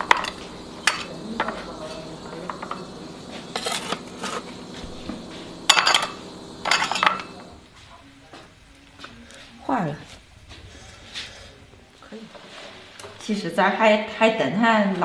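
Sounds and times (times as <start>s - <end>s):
utensils clinking against dishes: 5.7s - 7.4s.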